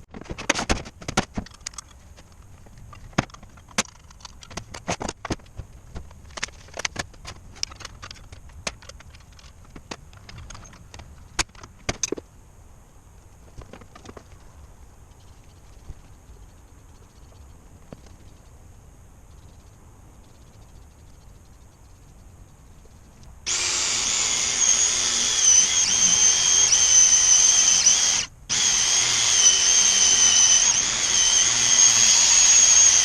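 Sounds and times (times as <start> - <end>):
sharp clicks and light knocks: 0.1 - 12.3.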